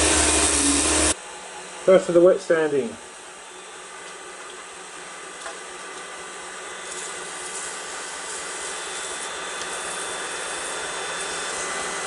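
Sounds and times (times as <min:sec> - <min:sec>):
sanding hiss: 0:00.0 - 0:01.2, 0:06.8 - 0:12.0
lathe motor whine: 0:00.0 - 0:02.3, 0:03.1 - 0:12.0.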